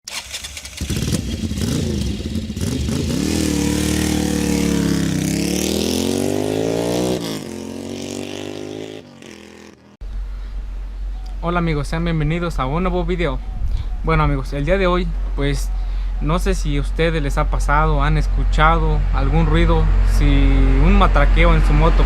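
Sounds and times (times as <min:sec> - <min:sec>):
motorcycle engine revving: 0:00.1 - 0:10.0.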